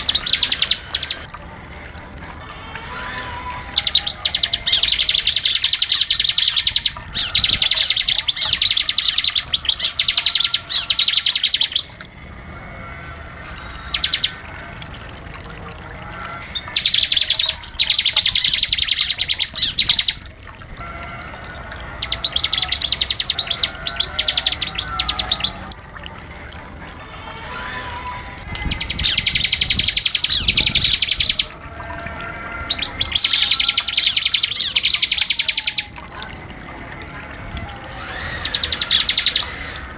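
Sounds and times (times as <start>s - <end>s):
bird singing rattling trills: 0.0s - 12.1s, 13.4s - 39.9s.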